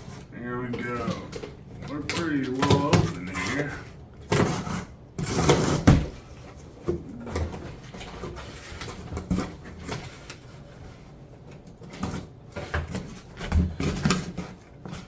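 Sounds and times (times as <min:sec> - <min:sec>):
cardboard rustling: 0:00.0 - 0:11.1.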